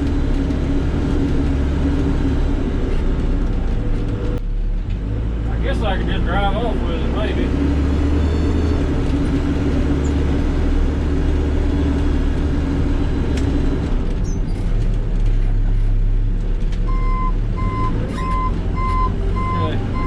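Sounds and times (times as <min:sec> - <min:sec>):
backhoe engine running: 0:00.0 - 0:20.0
backup alarm beeping: 0:16.9 - 0:20.0.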